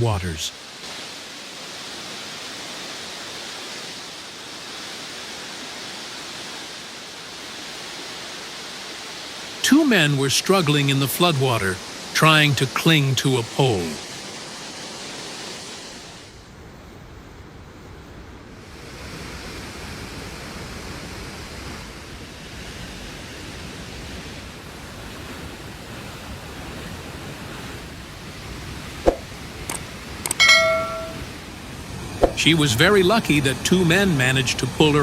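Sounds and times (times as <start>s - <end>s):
floodwater rushing: 0.0s - 15.8s
high-pitched call: 30.3s - 31.3s.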